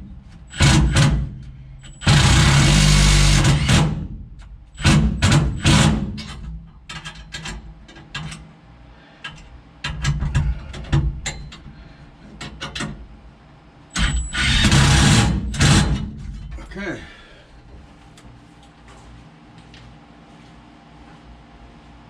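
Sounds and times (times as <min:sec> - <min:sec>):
loud continuous sound: 0:00.0 - 0:08.4, 0:13.9 - 0:19.8.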